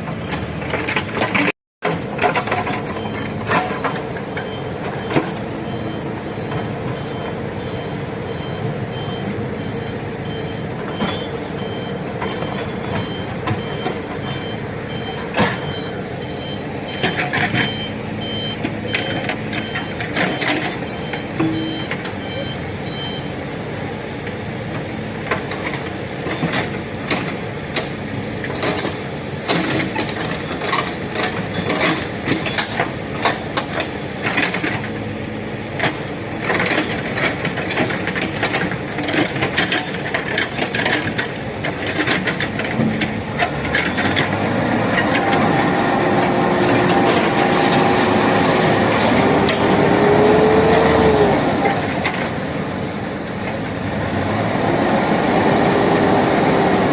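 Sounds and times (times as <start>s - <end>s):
diesel engine running: 0.0s - 56.9s
bucket clanking on earth and stone: 35.8s - 52.4s.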